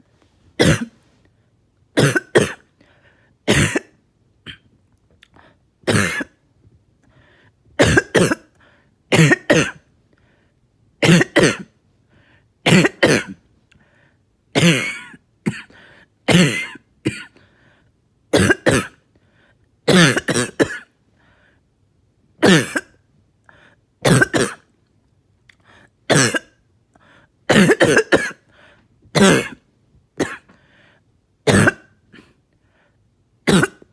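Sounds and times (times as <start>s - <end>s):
person coughing: 0.6s - 1.0s, 2.0s - 2.7s, 3.5s - 4.7s, 5.9s - 6.4s, 7.8s - 9.8s, 11.0s - 11.8s, 12.7s - 13.4s, 14.6s - 17.5s, 18.3s - 19.0s, 19.9s - 21.0s, 22.4s - 23.0s, 24.0s - 24.7s, 26.1s - 26.6s, 27.5s - 28.5s, 29.1s - 29.6s, 30.2s - 30.6s, 31.5s - 32.4s, 33.5s - 33.9s.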